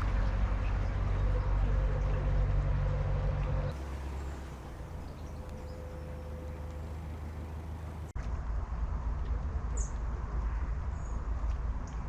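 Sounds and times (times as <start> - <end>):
diesel engine low rumble: 0.0 - 8.2.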